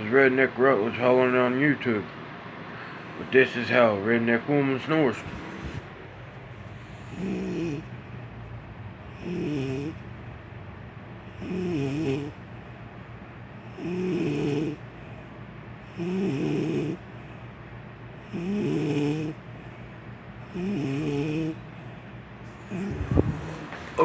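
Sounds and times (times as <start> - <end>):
woman snoring: 6.8 - 7.9, 9.1 - 10.0, 11.4 - 12.4, 13.7 - 14.8, 15.9 - 17.0, 18.2 - 19.4, 20.4 - 21.6, 22.5 - 24.0.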